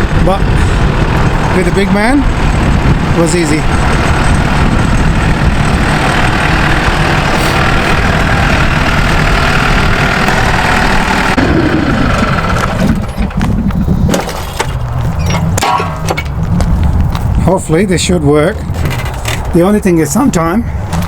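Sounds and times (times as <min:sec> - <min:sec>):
tractor engine rattling: 0:00.0 - 0:21.0
knocks and clunks of implement: 0:12.1 - 0:17.4, 0:18.6 - 0:19.7.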